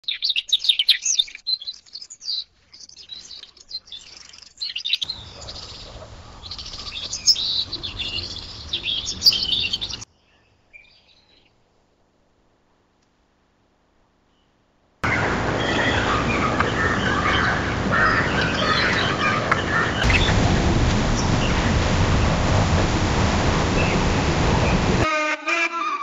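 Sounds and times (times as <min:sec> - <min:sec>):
small birds chirping: 0:00.0 - 0:11.6, 0:14.4 - 0:25.0
background hiss and rumble: 0:11.6 - 0:25.0.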